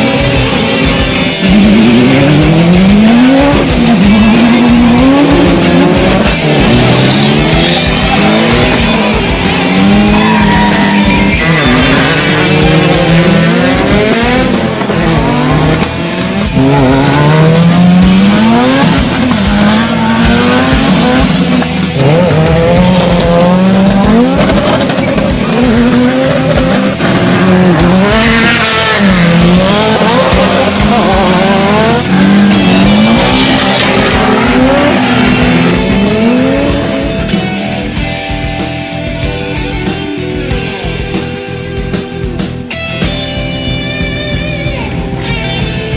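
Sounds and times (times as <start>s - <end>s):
race car engines revving: 0.0s - 42.9s
background music: 0.0s - 45.9s
tyre squeal: 6.5s - 13.2s.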